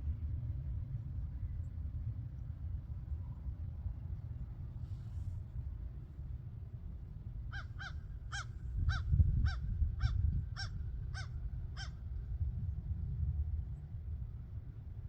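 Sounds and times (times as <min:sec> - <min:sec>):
wind rumble on microphone: 0:00.0 - 0:15.0
crow cawing: 0:07.5 - 0:11.9.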